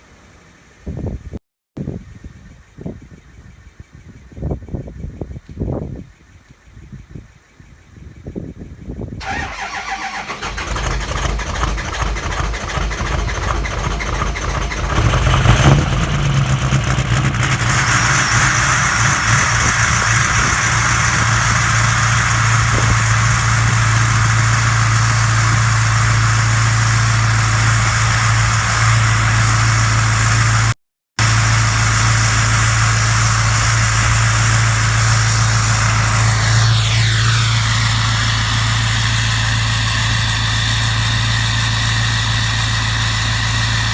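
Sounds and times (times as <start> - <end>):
diesel engine cold-starting: 9.2 - 43.9
high turbo whistle: 17.2 - 30.6, 31.2 - 43.9.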